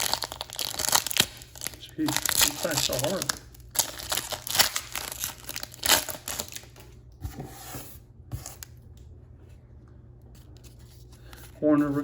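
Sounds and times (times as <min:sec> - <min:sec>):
foil wrapper crinkling: 0:00.0 - 0:06.8.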